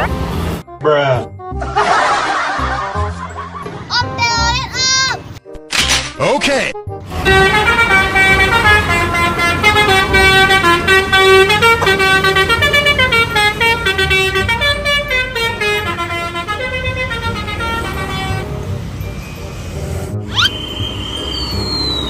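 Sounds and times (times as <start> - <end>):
musical air horns playing tune: 7.0 - 18.7.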